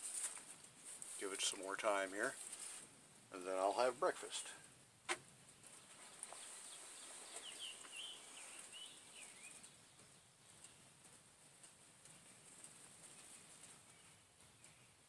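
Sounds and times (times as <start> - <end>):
faint bird chirping: 5.4 - 15.0.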